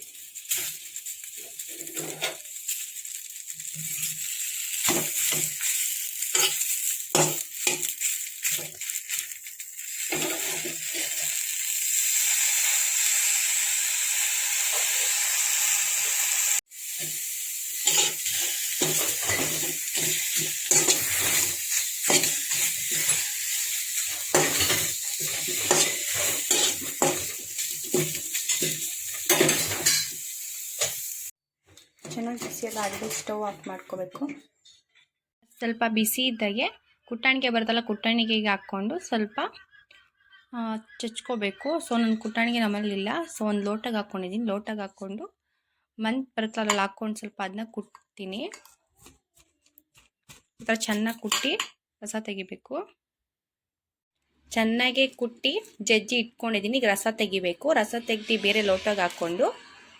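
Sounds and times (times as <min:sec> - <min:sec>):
leaves knocking and scraping on pan: 0:00.0 - 0:11.5, 0:17.8 - 0:31.2, 0:31.9 - 0:33.5
leaves sizzling in a pan: 0:00.0 - 0:31.4, 0:57.0 - 0:59.9.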